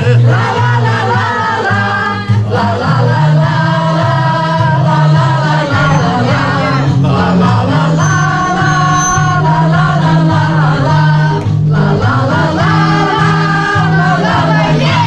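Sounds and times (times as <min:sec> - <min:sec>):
song with sung vocals: 0:00.0 - 0:15.0.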